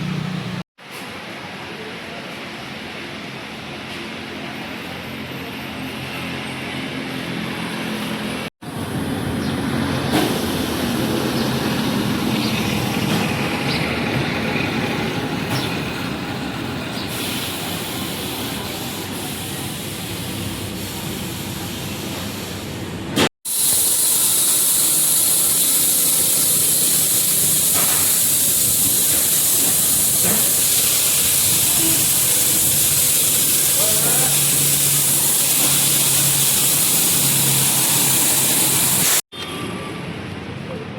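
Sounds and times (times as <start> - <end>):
car engine and road noise: 0.0 - 0.7, 6.1 - 23.3
steady hiss: 23.5 - 37.4.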